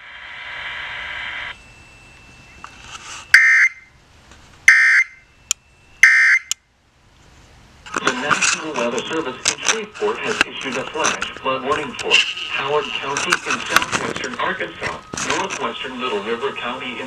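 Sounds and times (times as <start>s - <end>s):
warbling digital data tones: 0.9s - 4.0s.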